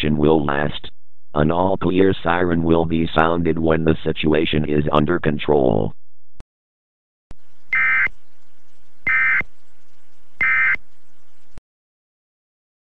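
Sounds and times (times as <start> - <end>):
harsh buzzing data bursts: 7.7 - 8.1, 9.1 - 9.4, 10.4 - 10.8.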